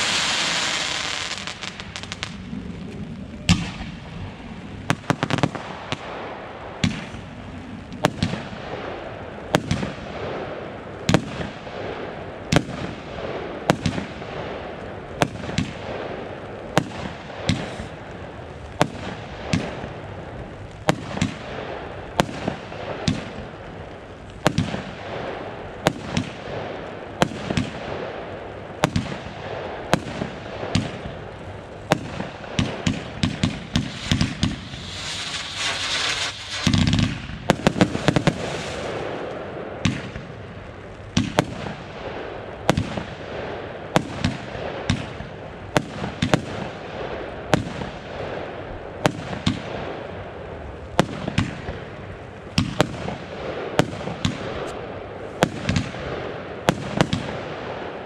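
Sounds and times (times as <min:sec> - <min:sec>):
fireworks banging: 0:00.0 - 0:08.9, 0:12.5 - 0:27.9, 0:28.8 - 0:48.4, 0:52.4 - 0:58.0
fireworks crackling hiss: 0:00.0 - 0:10.2, 0:12.3 - 0:48.0.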